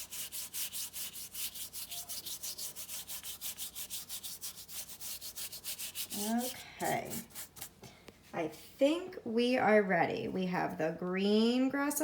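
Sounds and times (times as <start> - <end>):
paintbrush scrubbing on paper: 0.0 - 7.7.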